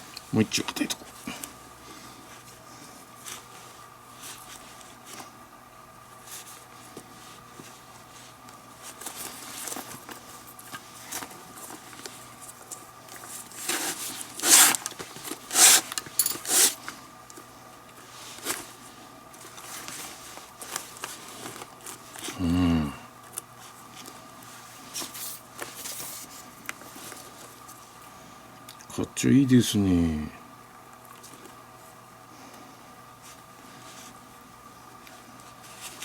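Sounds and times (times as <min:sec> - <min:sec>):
loud lace pulls: 0:13.7 - 0:16.8.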